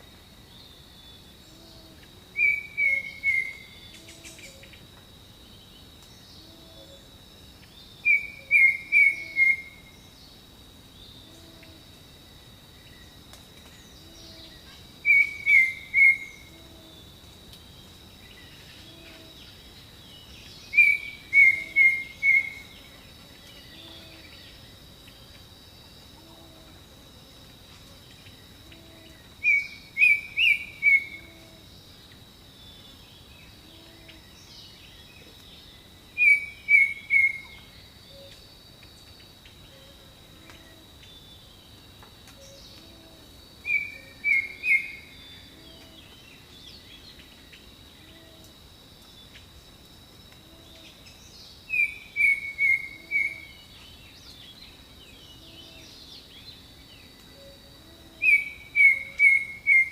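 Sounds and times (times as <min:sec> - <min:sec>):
high insect drone: 0:00.0 - 0:59.9.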